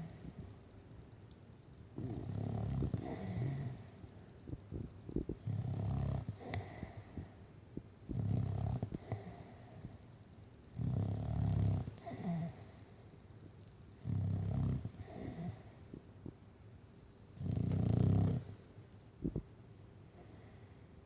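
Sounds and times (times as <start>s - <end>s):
dog snoring: 2.0s - 4.0s, 5.2s - 7.4s, 8.0s - 10.0s, 10.7s - 12.8s, 14.0s - 16.0s, 17.4s - 18.6s.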